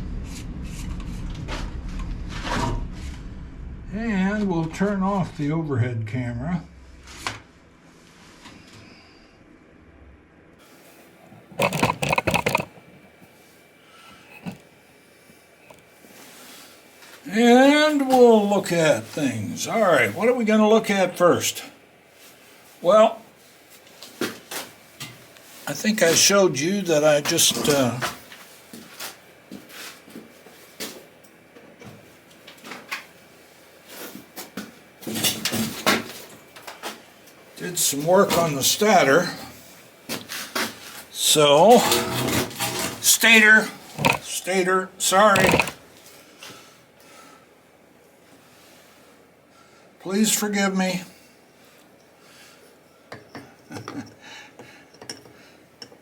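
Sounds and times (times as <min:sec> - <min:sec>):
hard objects clicking and clattering: 0:11.5 - 0:12.9, 0:44.0 - 0:44.3, 0:45.4 - 0:45.8.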